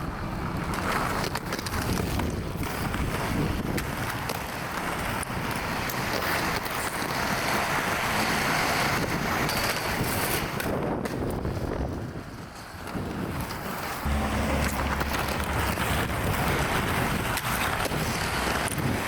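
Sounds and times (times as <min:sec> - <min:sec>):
wind buffeting microphone: 0:01.7 - 0:04.2.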